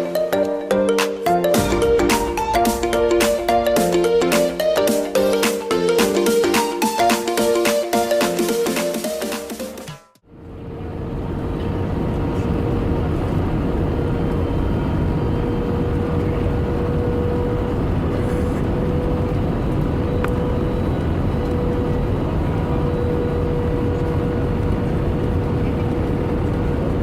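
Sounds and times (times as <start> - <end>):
constant even whine: 0.0 - 27.0
aircraft cabin engine rumble: 10.4 - 27.0.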